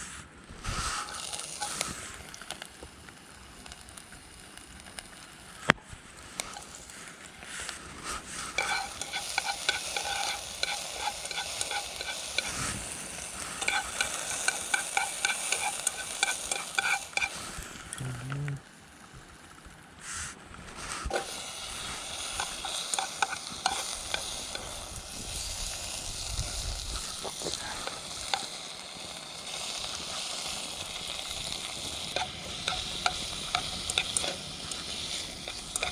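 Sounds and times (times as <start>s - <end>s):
food sizzling in a pan: 0.0s - 35.9s
utensil scraping metal pan: 6.3s - 17.6s, 21.0s - 25.0s, 31.0s - 35.9s.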